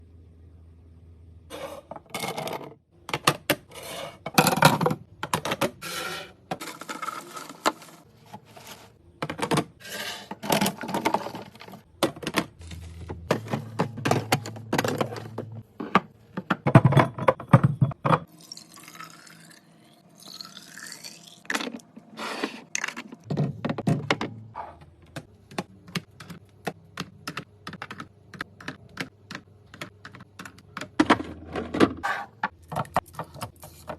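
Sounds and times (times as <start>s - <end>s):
faint low hum: 0.0s - 1.5s
plastic containers clicking: 10.4s - 17.8s.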